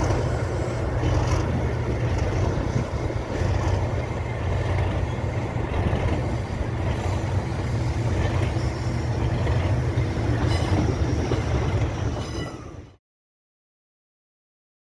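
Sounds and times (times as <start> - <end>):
diesel locomotive engine throbbing: 0.0 - 13.0
faint high-pitched squeal: 12.1 - 13.0.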